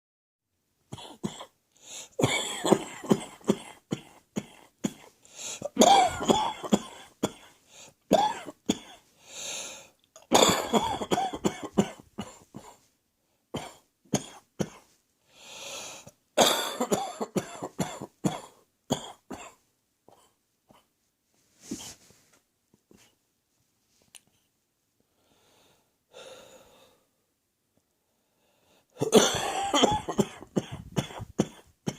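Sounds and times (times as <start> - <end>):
person coughing: 1.0 - 9.0, 10.3 - 12.8, 13.6 - 14.9, 16.4 - 20.9, 29.0 - 31.9
person breathing in: 1.8 - 2.2, 5.2 - 5.7, 9.2 - 10.0, 15.3 - 16.1, 25.1 - 27.2.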